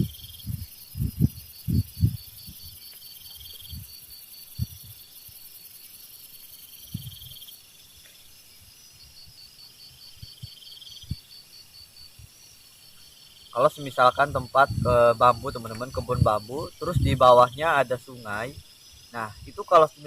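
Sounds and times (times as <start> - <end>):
soft low thumps: 0.0 - 2.8
crickets chirping: 0.0 - 20.0
high-pitched insect buzz: 0.0 - 20.0.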